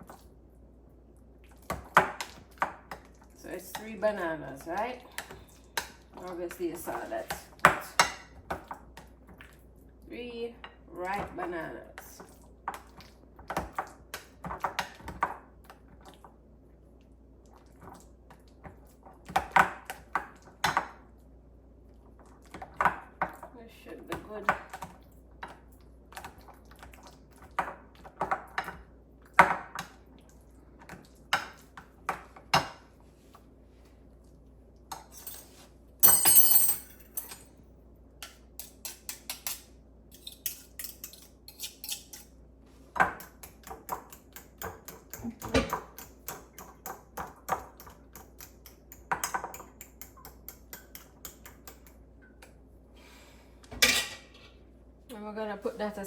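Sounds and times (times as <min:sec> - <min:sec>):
kitchen utensils and dishes clinking: 0:35.0 - 0:37.5, 0:53.7 - 0:54.6.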